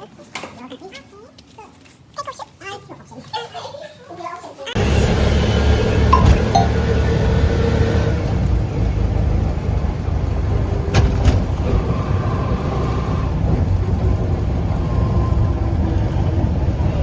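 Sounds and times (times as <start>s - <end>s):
road vehicle rumble: 4.8s - 17.0s.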